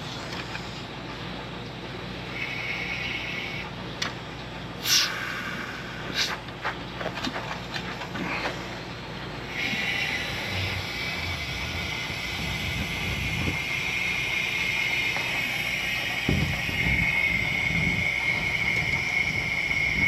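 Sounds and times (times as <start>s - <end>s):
compressed air hissing: 2.3s - 3.7s, 4.8s - 6.4s, 9.4s - 20.0s.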